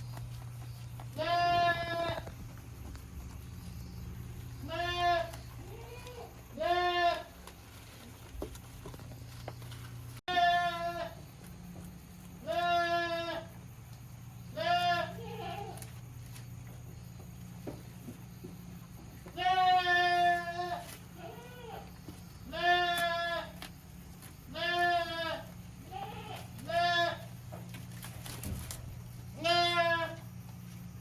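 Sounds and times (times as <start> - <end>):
steady low hum: 0.0 - 31.0
young goat bleating: 1.0 - 2.4, 4.6 - 7.5, 10.3 - 11.2, 12.4 - 13.6, 14.5 - 15.9, 19.2 - 23.7, 24.5 - 27.3, 29.3 - 30.3.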